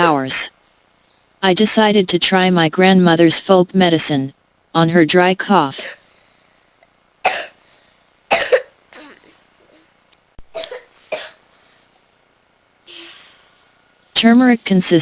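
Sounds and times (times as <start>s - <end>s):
girl coughing: 5.8s - 6.0s, 7.2s - 7.6s, 8.3s - 9.8s, 10.5s - 11.4s.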